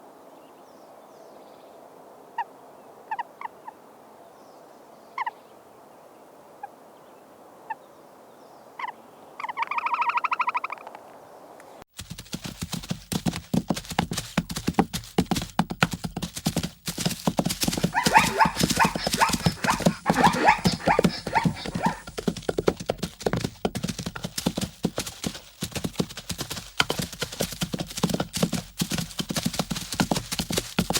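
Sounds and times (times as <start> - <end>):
clatter of hooves: 11.9 - 30.9
zebras barking: 17.7 - 22.2
buzzing pulsed animal call: 17.9 - 22.1.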